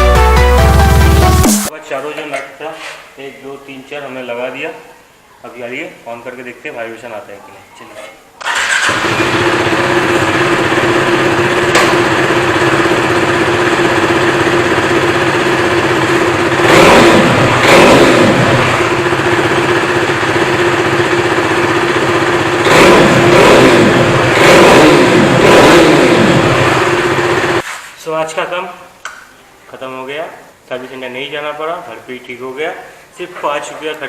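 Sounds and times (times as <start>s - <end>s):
motorcycle engine idling: 8.8s - 24.4s.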